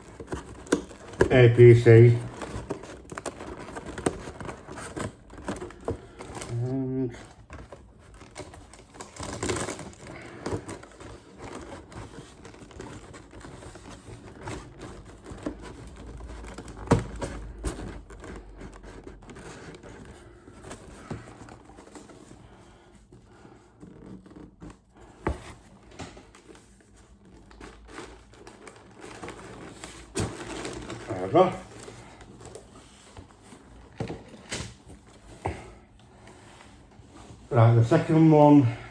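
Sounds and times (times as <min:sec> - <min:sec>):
packaging rustling and crinkling: 0:00.0 - 0:38.9.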